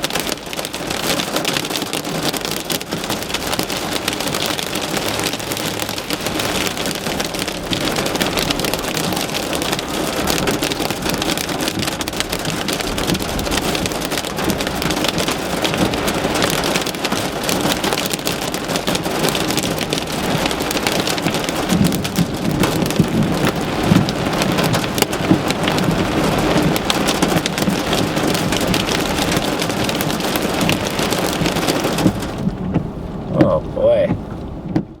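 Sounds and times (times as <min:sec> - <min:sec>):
heavy rain pelting a car: 0:00.0 - 0:35.0.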